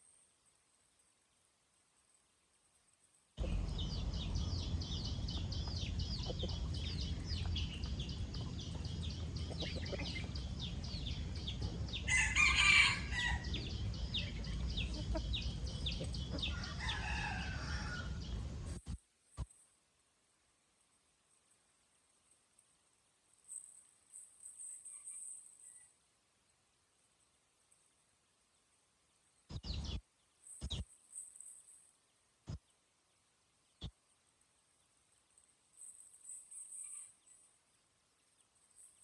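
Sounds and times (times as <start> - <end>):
low steady rumble: 3.4 - 12.1
chicks peeping: 3.4 - 17.6
adult chicken call: 12.1 - 13.5.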